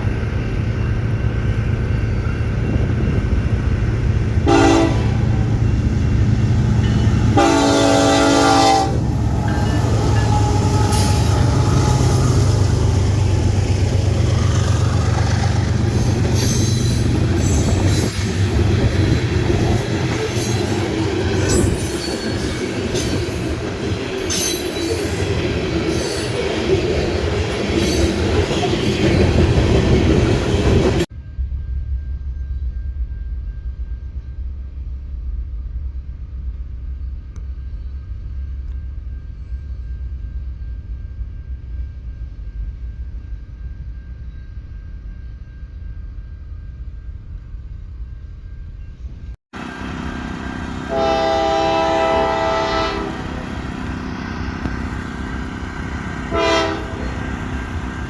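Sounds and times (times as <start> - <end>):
train engine rumble: 0.0 - 58.0
train horn blasts: 4.3 - 13.6, 49.6 - 58.0.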